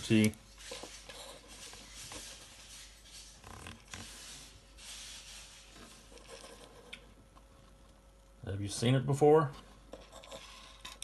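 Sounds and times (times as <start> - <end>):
light rubbing handling noise: 0.0 - 7.1.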